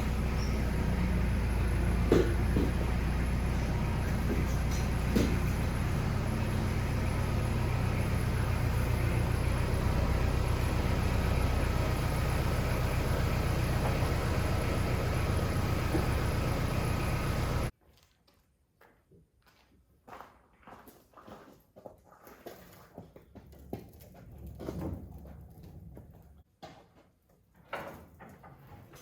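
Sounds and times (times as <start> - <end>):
machine humming and hissing: 0.0 - 17.7.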